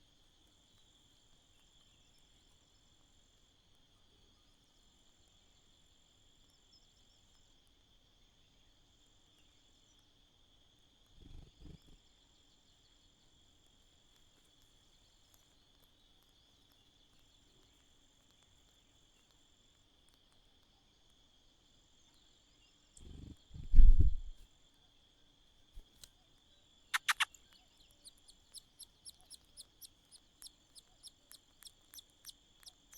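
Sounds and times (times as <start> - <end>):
dull low thumps: 23.6 - 24.4
crickets chirring: 26.6 - 32.9
short high chirps: 27.0 - 27.3.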